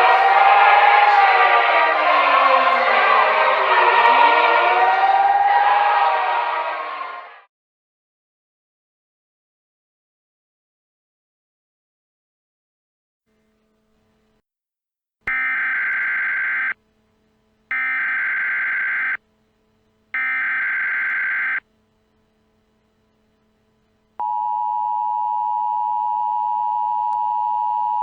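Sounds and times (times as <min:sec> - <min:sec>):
data tone bursts: 0:15.3 - 0:16.8, 0:17.7 - 0:19.2, 0:20.2 - 0:21.6
steady attention tone: 0:15.3 - 0:24.5.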